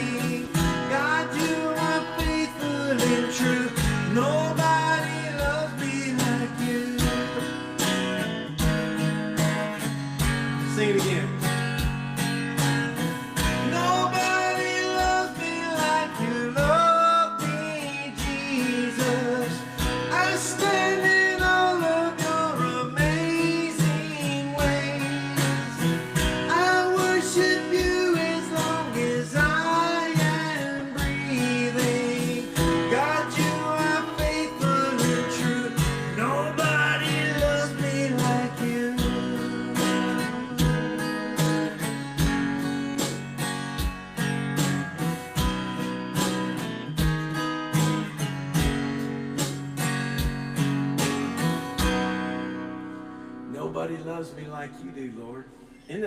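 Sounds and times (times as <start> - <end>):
person singing: 0.0 - 7.8, 13.6 - 42.0
strummed acoustic guitar: 0.0 - 56.0.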